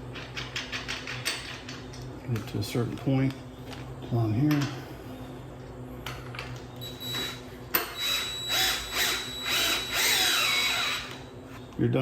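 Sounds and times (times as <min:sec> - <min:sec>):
high motor whine: 0:06.8 - 0:11.3
power tool pulsing: 0:08.0 - 0:11.2.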